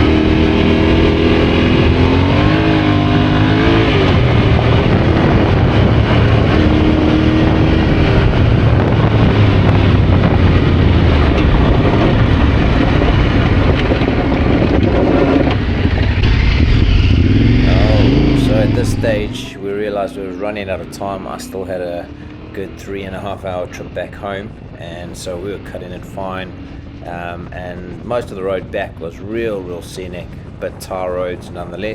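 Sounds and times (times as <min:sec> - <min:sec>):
motorcycle engine running: 0:00.0 - 0:23.5
wind and road noise: 0:00.0 - 0:31.9.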